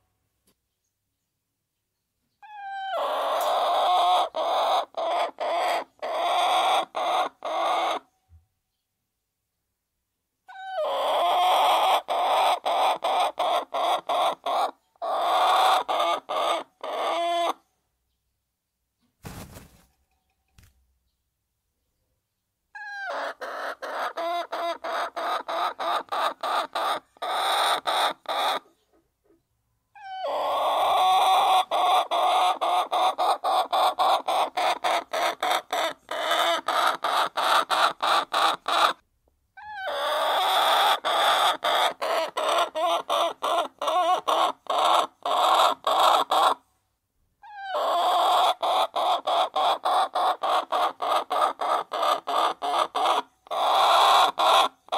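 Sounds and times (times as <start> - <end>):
hens clucking: 2.6 - 8.1, 10.5 - 17.6, 22.8 - 29.4, 30.0 - 39.0, 39.7 - 46.6, 47.6 - 54.9.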